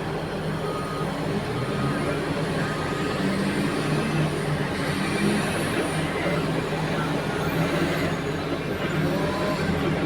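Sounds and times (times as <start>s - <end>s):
heavy diesel engines droning: 0.0s - 10.0s.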